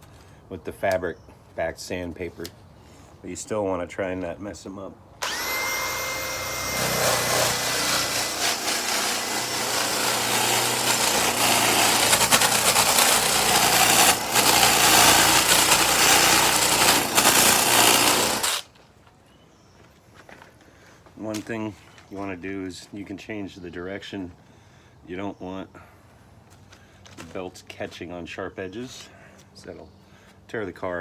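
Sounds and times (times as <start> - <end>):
power tool motor whining: 5.2 - 18.6
sanding flaps slapping on wood: 5.2 - 18.6.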